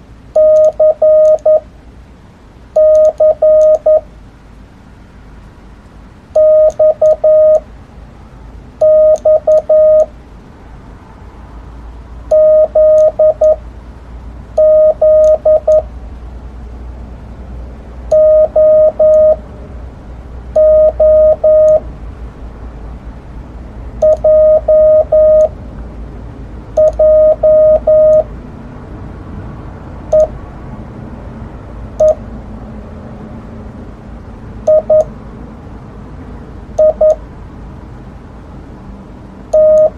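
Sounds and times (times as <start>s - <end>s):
morse code beeps: 0.4s - 1.6s, 2.8s - 4.1s, 6.4s - 7.6s, 8.8s - 10.1s, 12.3s - 13.6s, 14.6s - 15.9s, 18.1s - 19.4s, 20.6s - 21.8s, 24.0s - 25.6s, 26.8s - 28.3s, 30.1s - 30.3s, 32.0s - 32.2s, 34.7s - 35.1s, 36.8s - 37.2s, 39.5s - 39.9s.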